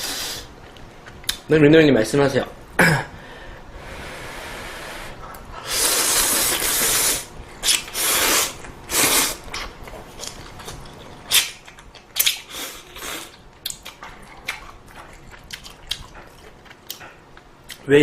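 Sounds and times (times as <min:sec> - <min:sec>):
chewing with sharp clicks: 0:00.6 - 0:01.5, 0:13.3 - 0:17.9
noodles being slurped: 0:05.6 - 0:10.4.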